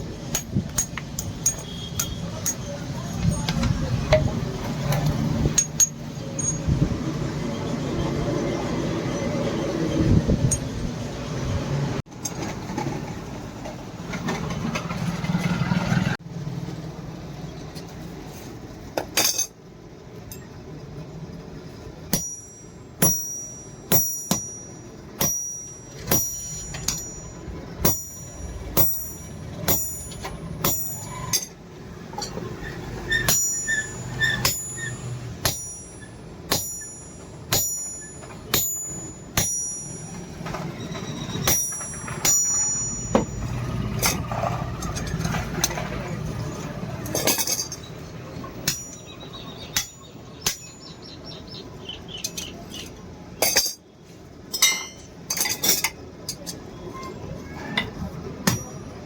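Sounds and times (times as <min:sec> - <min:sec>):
hammer striking steel on anvil: 0:00.3 - 0:02.7, 0:22.1 - 0:31.6, 0:33.1 - 0:40.6, 0:41.4 - 0:44.2, 0:48.6 - 0:50.9, 0:54.5 - 0:56.0, 0:58.4 - 0:58.9.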